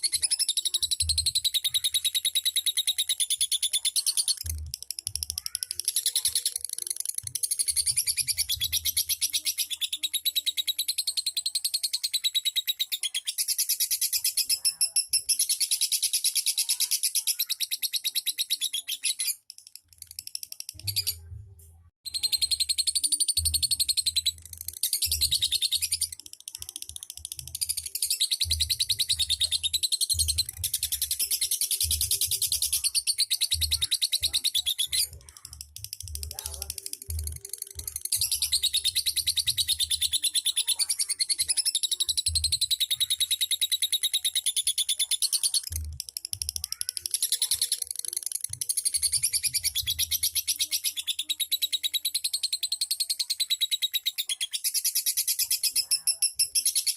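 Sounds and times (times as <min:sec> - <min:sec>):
bird chattering trill: 0:00.0 - 0:21.2, 0:22.1 - 0:56.9.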